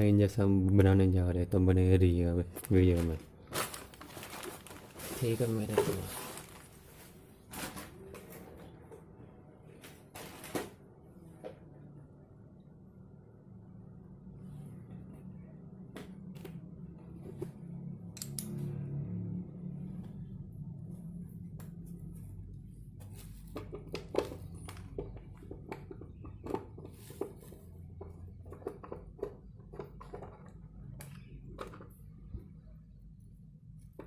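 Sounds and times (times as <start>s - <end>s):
low steady hum: 0.0s - 34.0s.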